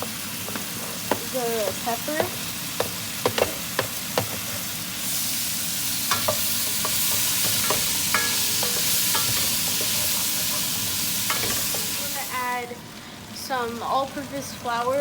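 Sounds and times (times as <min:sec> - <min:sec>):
vegetables sizzling in a pot: 0:00.0 - 0:15.0
utensil clinking against pot: 0:06.1 - 0:12.0.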